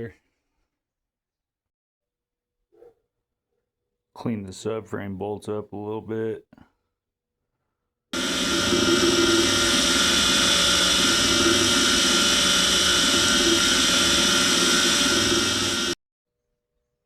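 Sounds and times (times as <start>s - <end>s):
powered wire wheel running: 8.2s - 16.0s.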